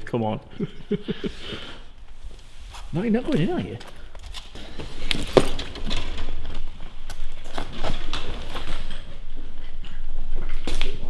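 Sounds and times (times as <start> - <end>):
debris clattering and crunching: 3.2 - 9.2.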